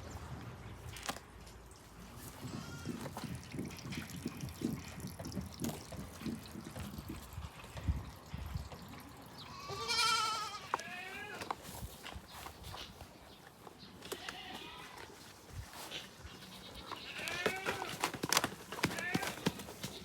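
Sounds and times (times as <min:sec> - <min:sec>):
goat bleating: 0:02.3 - 0:03.1, 0:09.4 - 0:11.5, 0:14.0 - 0:15.2, 0:16.4 - 0:18.0, 0:18.8 - 0:19.6.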